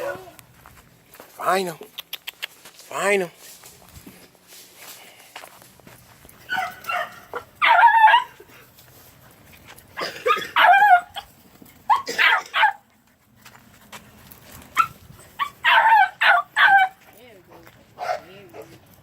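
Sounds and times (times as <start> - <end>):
puppies yipping and barking: 6.4 - 8.6, 9.5 - 13.4, 14.6 - 17.0.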